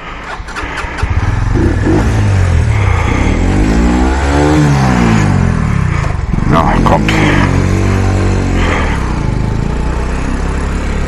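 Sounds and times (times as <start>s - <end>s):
motorcycle engine revving: 0.0s - 11.0s.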